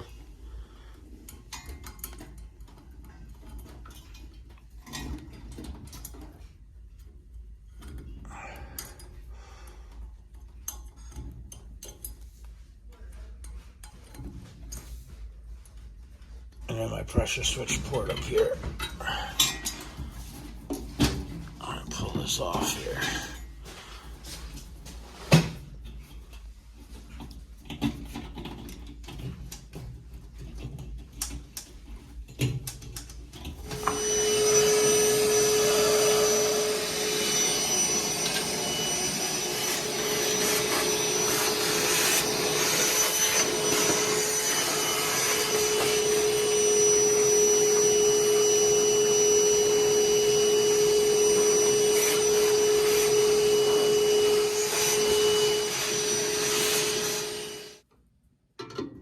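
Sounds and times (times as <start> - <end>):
vacuum cleaner humming and whining: 21.0 - 23.4, 33.4 - 57.8
clicks and knocks of furnace parts: 58.6 - 59.0.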